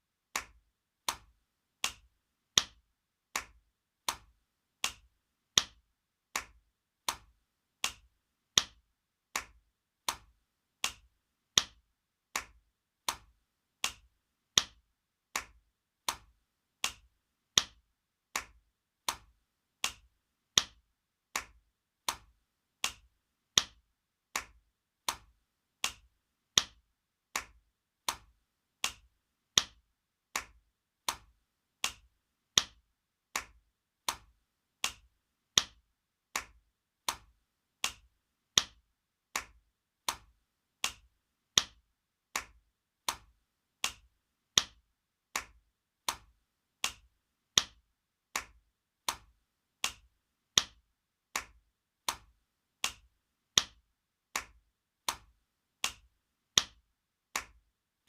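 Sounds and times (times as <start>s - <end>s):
open-hand slaps: 57.4s - 57.6s.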